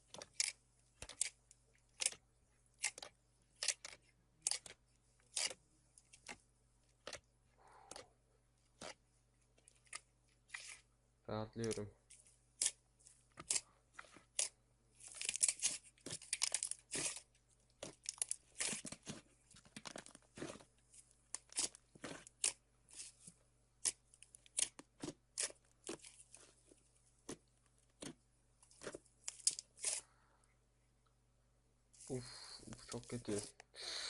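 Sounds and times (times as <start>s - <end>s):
slime crackling and popping: 2.8s - 6.4s, 15.1s - 19.2s, 21.3s - 23.1s, 23.8s - 26.2s.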